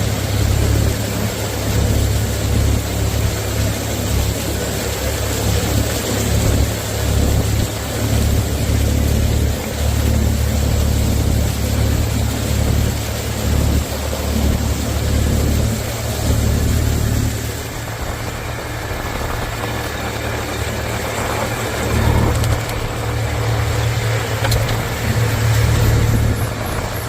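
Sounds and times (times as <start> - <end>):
engine idling: 0.0 - 27.0.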